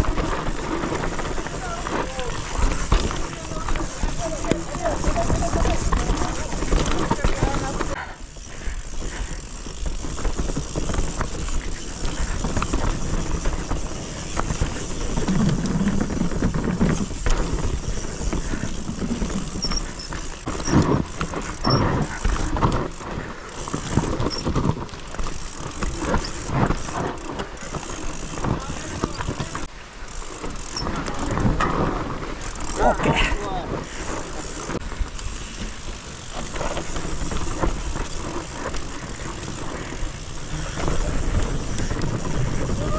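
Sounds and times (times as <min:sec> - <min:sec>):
bike knocking and rattling: 0:00.0 - 0:42.9
bike tyre noise on dirt: 0:00.0 - 0:42.9.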